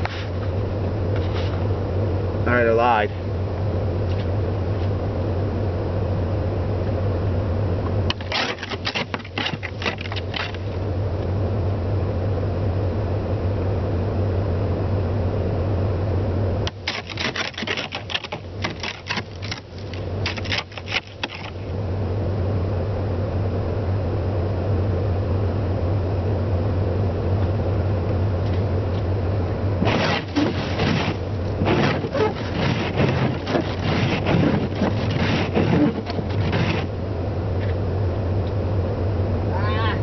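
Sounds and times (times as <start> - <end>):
rapid sharp clicks and scrapes: 8.1 - 10.7, 16.7 - 21.7, 29.8 - 36.9
truck engine humming: 14.7 - 40.0.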